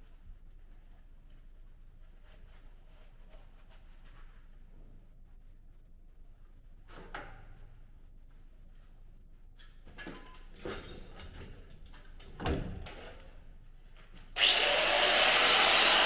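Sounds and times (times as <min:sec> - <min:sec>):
power tool running: 0:14.4 - 0:16.0.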